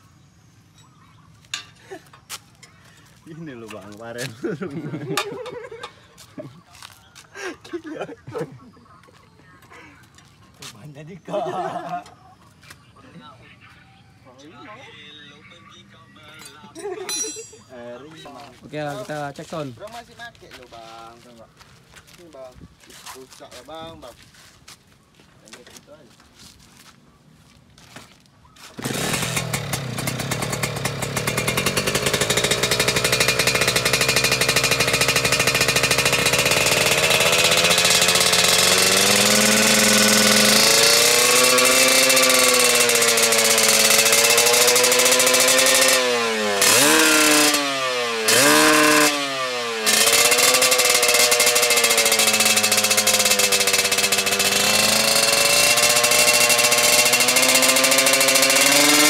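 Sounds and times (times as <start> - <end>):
loud raspy motorcycle engine revving: 28.8 - 59.0.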